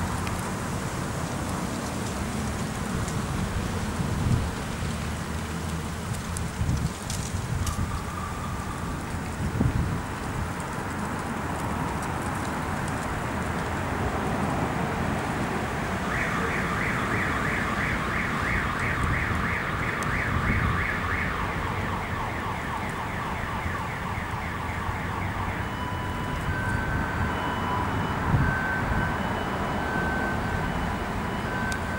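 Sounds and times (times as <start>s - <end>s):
street noise: 0.0s - 31.9s
car alarm warbling and beeping: 16.1s - 31.9s.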